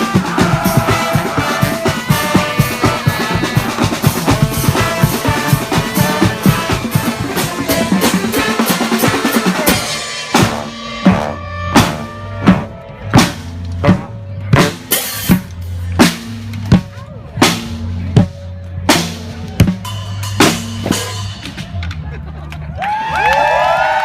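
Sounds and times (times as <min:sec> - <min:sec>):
marching band playing: 0:00.0 - 0:21.9
bass drum beats: 0:00.0 - 0:22.2
low held bass notes: 0:09.5 - 0:22.8.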